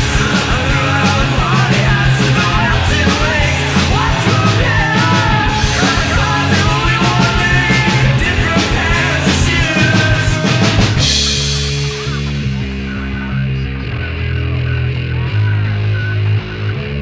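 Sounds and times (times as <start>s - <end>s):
man shouting lead vocal: 0.0s - 11.4s
punk rock band playing: 0.0s - 17.0s.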